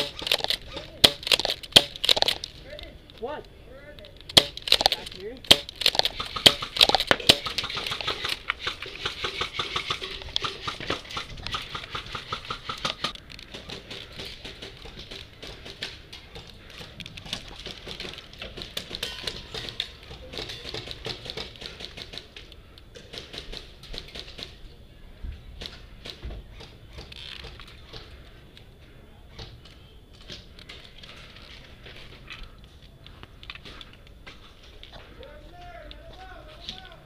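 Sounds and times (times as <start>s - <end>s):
airsoft guns firing: 0.0s - 2.5s, 4.3s - 22.4s.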